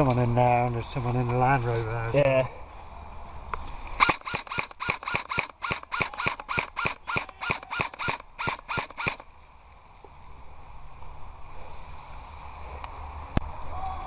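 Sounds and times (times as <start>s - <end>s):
airsoft rifle shots: 4.0s - 9.3s.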